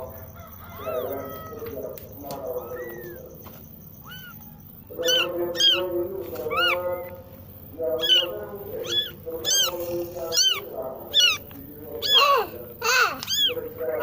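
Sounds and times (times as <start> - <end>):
kittens mewing: 0.0 - 14.0
low drawn animal call: 0.0 - 14.0.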